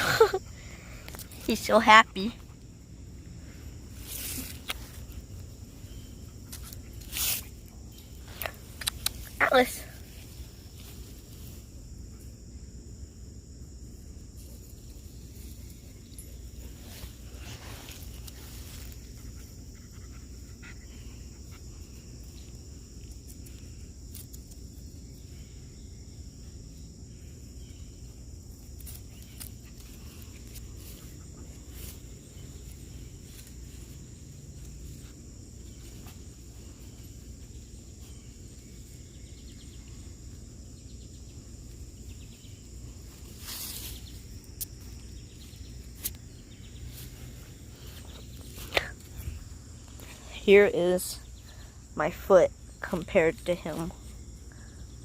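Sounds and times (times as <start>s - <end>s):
high-pitched insect chorus: 0.0s - 55.0s
small clicks: 8.4s - 9.3s.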